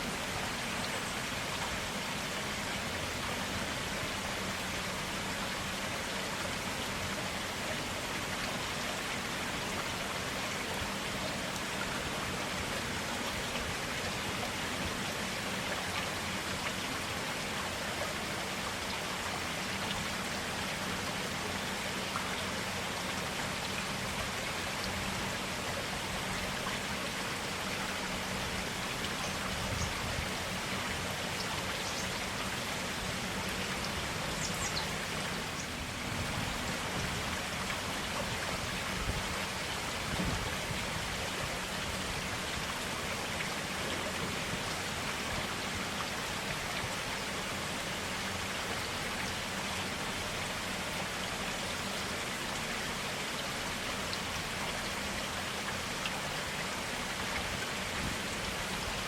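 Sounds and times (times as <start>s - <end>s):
stream water flowing over stones: 0.0s - 59.0s.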